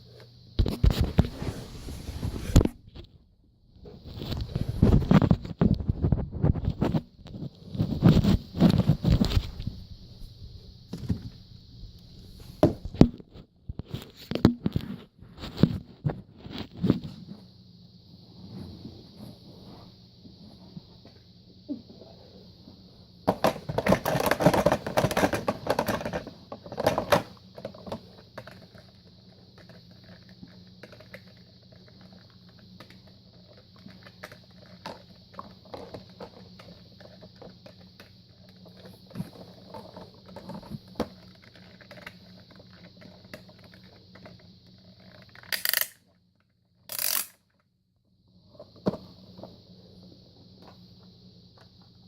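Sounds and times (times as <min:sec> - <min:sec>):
faint steady hum and hiss: 0:00.0 - 0:52.0
hard objects clicking and clattering: 0:23.3 - 0:28.8.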